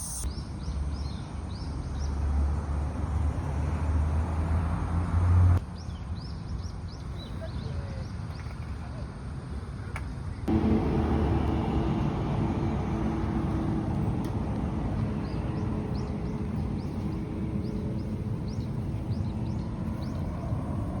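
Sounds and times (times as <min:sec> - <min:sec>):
short high chirps: 0:00.0 - 0:00.3
engine hum with low rumble: 0:00.9 - 0:07.3, 0:08.4 - 0:21.0.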